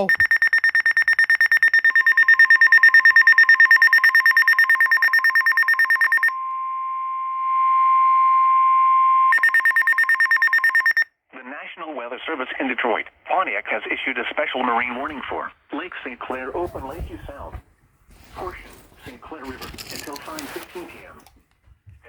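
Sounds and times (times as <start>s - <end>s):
rapidly pulsing electronic beep: 0.0s - 6.4s, 9.3s - 11.1s.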